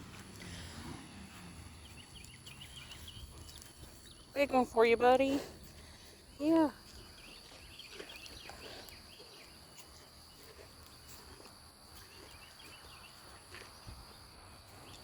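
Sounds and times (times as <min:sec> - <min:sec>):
insect chirps: 0:05.8 - 0:15.0.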